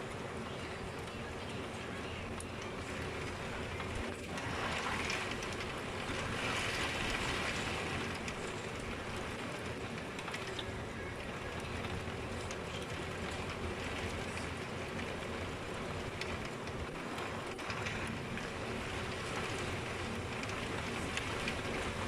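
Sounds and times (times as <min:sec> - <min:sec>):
heavy rain and wind: 0:00.0 - 0:22.0
ticks of raindrops: 0:00.0 - 0:22.0.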